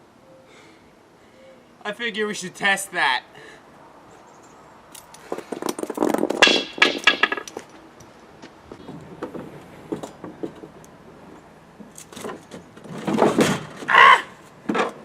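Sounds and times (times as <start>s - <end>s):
bumper clattering and rattling: 5.3s - 7.8s, 8.7s - 13.9s.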